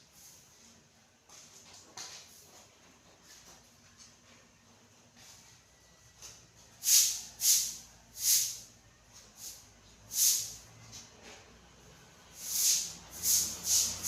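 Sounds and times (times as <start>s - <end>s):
broom sweeping: 0.0s - 0.8s, 6.7s - 10.7s, 12.3s - 14.0s.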